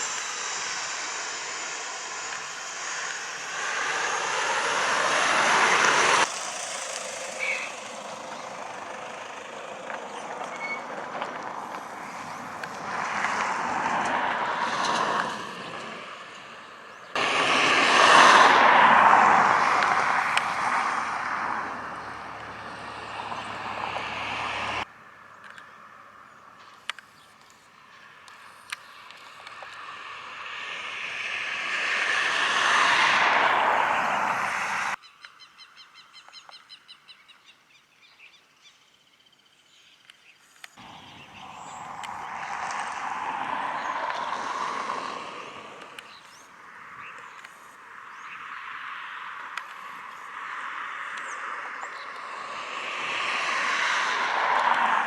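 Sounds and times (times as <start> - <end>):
aircraft passing: 0.0 - 26.9, 27.7 - 35.0, 40.8 - 55.0.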